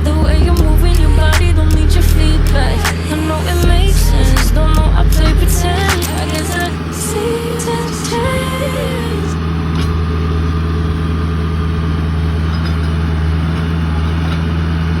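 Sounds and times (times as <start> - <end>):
vehicle engine droning: 0.0 - 15.0.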